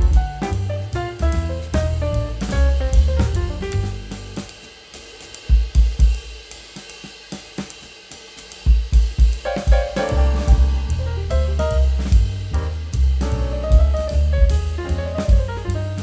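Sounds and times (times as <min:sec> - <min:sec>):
bass and melody: 0:00.0 - 0:04.5, 0:09.7 - 0:16.0
jazzy drum kit: 0:00.0 - 0:16.0.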